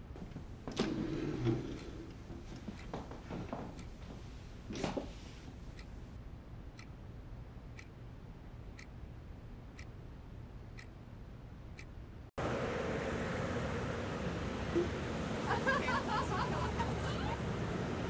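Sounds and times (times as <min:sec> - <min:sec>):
clock ticking: 0:00.0 - 0:06.2.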